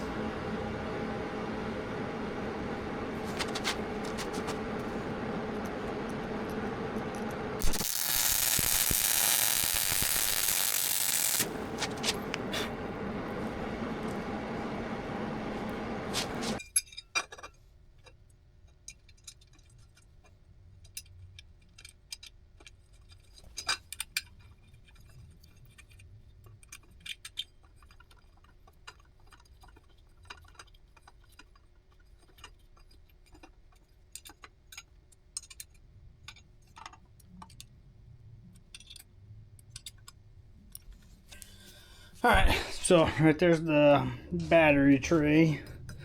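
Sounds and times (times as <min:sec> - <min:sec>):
welding hiss: 0:03.1 - 0:16.6.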